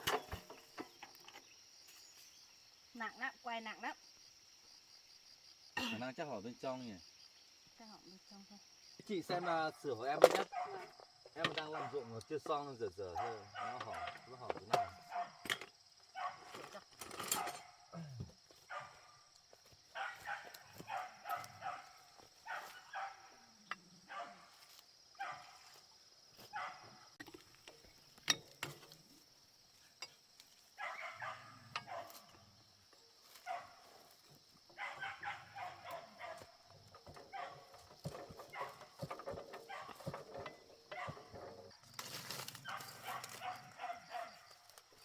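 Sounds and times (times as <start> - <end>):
dog barking and yipping: 10.4 - 10.9, 11.6 - 12.2, 13.2 - 15.5, 16.2 - 16.6, 17.3 - 17.8, 18.7 - 19.1, 19.9 - 23.5, 24.1 - 24.6, 25.2 - 25.7, 26.4 - 27.1, 30.8 - 32.4, 33.3 - 34.0, 34.7 - 41.6, 42.6 - 44.6.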